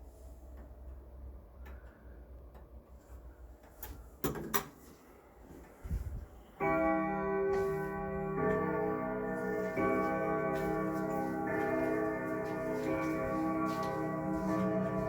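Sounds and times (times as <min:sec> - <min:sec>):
clock chime strike: 0:06.6 - 0:15.0.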